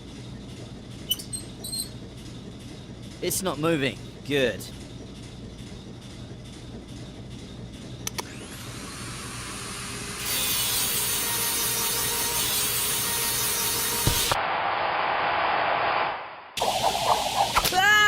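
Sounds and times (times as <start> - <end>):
click: 8.0 - 8.3.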